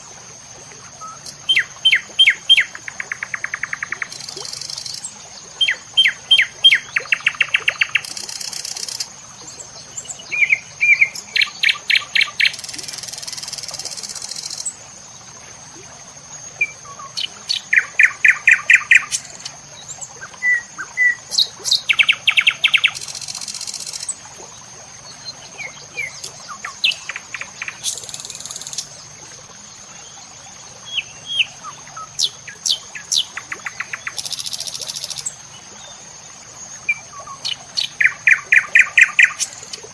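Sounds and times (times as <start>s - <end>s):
high-pitched insect whine: 0.0s - 9.1s, 9.7s - 20.0s, 20.7s - 24.3s, 25.1s - 29.7s, 31.4s - 35.4s, 36.5s - 39.9s
birds chirping: 25.1s - 29.0s, 36.8s - 39.9s.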